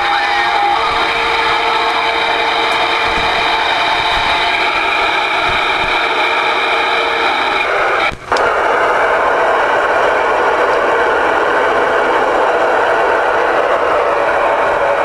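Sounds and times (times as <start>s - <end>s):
radio static hiss: 0.0s - 9.3s.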